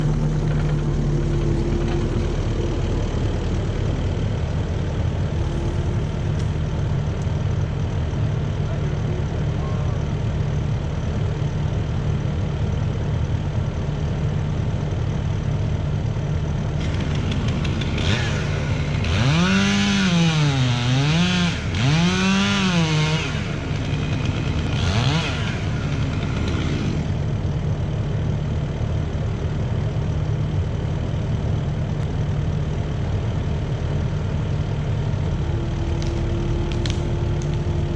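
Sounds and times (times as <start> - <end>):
skid steer engine under load: 0.0 - 37.9
tree crackling and breaking: 16.8 - 27.2, 35.8 - 37.9.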